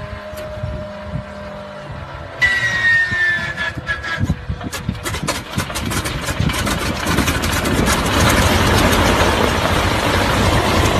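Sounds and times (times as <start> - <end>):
airplane engine starting: 0.0 - 10.9.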